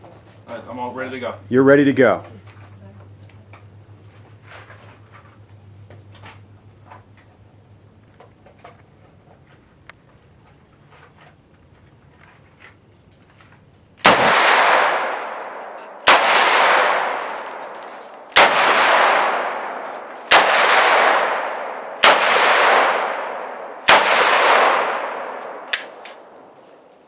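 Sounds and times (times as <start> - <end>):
gunshots with echo: 14.0 - 26.4
sharp click: 25.7 - 26.5.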